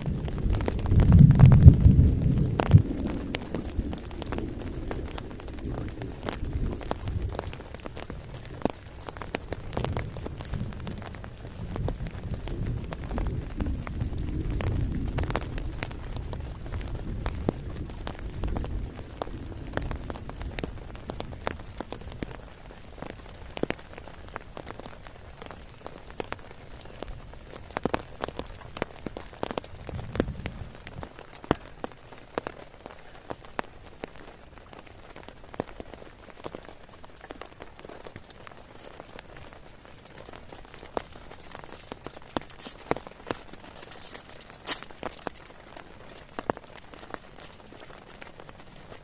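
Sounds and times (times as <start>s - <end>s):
low rumble: 0.0s - 21.5s
steady rain falling: 0.0s - 49.0s.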